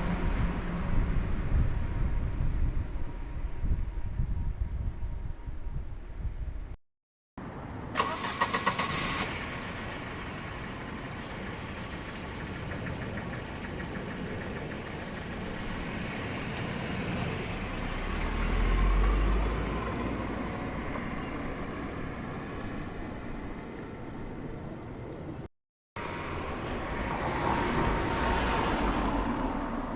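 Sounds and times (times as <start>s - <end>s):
low engine rumble: 0.0s - 6.8s, 8.0s - 25.5s
car starter cranking: 8.0s - 10.6s
car engine idling: 8.0s - 17.8s.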